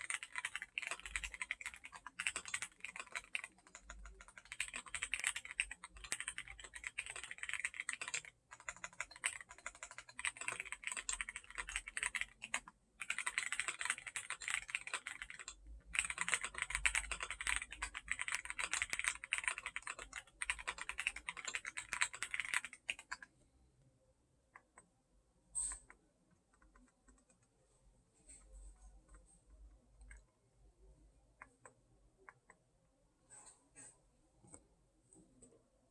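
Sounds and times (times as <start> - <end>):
mechanical keyboard typing: 0.0 - 23.3.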